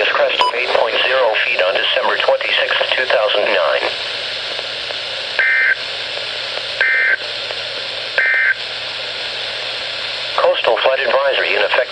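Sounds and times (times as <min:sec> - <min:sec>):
radio hiss: 0:00.0 - 0:11.9
digital tone bursts: 0:06.8 - 0:07.2, 0:08.2 - 0:08.6.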